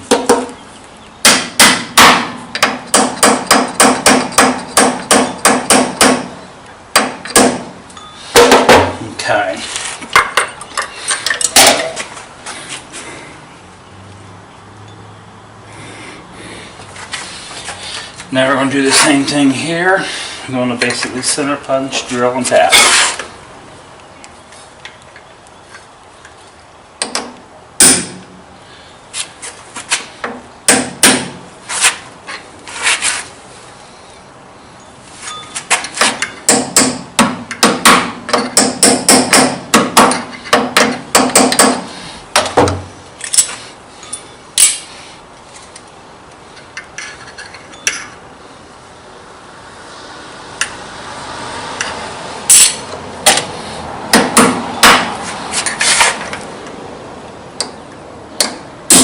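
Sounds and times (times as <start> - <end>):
hammer tapping metal: 36.0 - 42.8.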